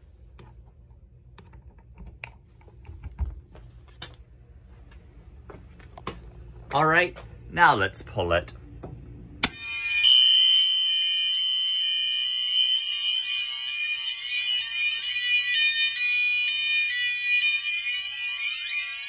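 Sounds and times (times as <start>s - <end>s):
alternating high-low alarm: 9.4s - 19.0s
steady high alarm tone: 9.4s - 19.0s
rising whoop alarm horn: 9.5s - 19.0s.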